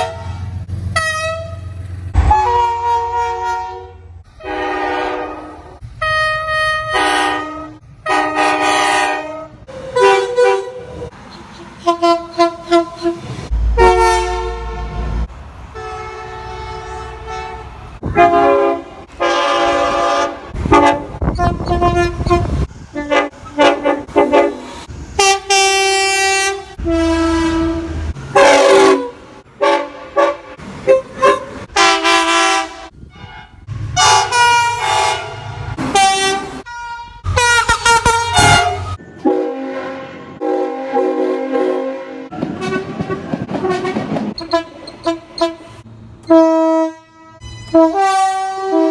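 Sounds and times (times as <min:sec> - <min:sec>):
locomotive air horns: 0:00.0 - 0:48.9
low rumble of train: 0:00.0 - 0:48.9.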